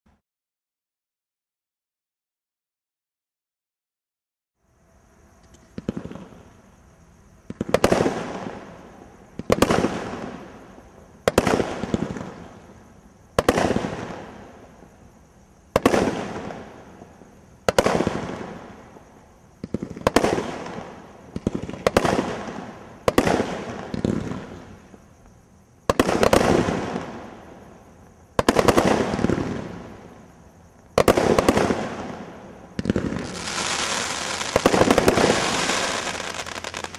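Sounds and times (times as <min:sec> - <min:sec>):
firework bangs: 0:07.5 - 0:08.8, 0:15.7 - 0:16.8, 0:17.6 - 0:18.9, 0:19.6 - 0:24.8, 0:25.8 - 0:27.4, 0:28.4 - 0:30.2, 0:30.9 - 0:36.9
firework crackling: 0:30.9 - 0:36.9.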